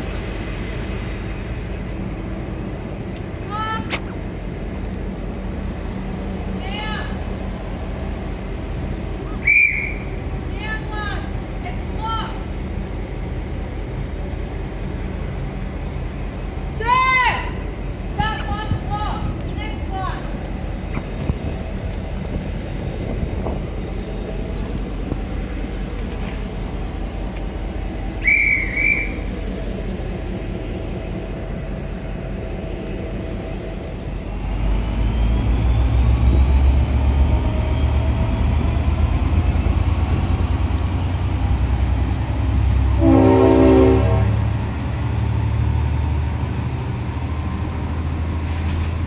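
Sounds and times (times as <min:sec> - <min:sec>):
rising whine of train: 0:00.0 - 0:49.0
train rumble: 0:00.0 - 0:49.0
shrill whistle: 0:09.4 - 0:10.1, 0:28.2 - 0:29.2
train horn: 0:42.9 - 0:44.6.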